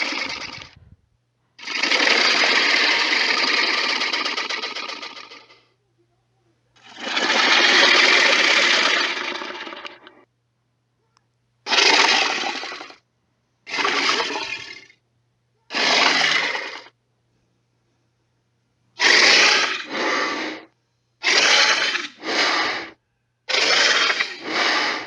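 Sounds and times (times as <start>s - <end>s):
harsh raspy creature call: 0.0s - 0.8s, 1.6s - 5.6s, 6.9s - 10.2s, 11.7s - 13.0s, 13.7s - 14.9s, 15.7s - 16.9s, 19.0s - 25.0s.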